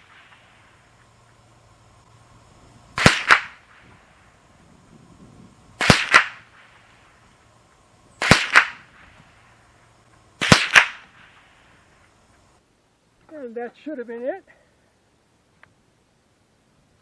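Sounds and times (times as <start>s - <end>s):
second crack: 3.0s - 3.8s, 5.8s - 6.5s, 10.4s - 11.1s
rifle shots: 3.0s - 3.9s, 5.8s - 6.9s, 8.2s - 9.2s, 10.4s - 11.6s.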